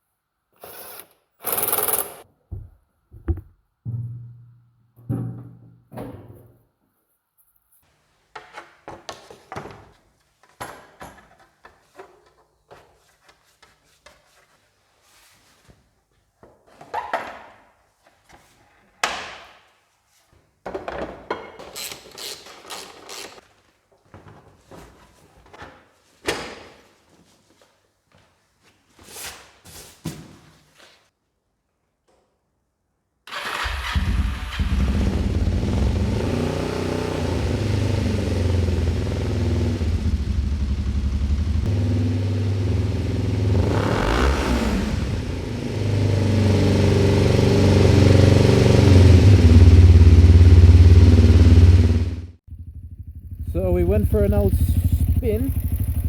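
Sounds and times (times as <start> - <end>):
low hum: 49.4 - 56.0.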